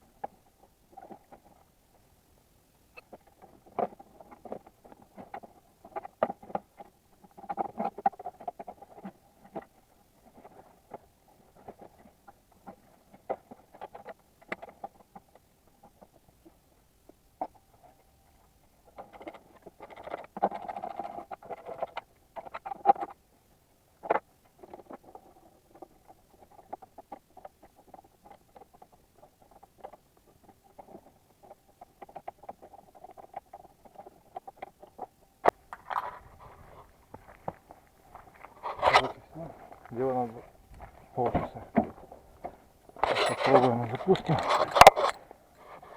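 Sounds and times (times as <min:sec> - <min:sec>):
faint steady hum: 0:00.0 - 0:45.9
tool clicks and scrapes: 0:38.5 - 0:39.3, 0:43.0 - 0:45.9.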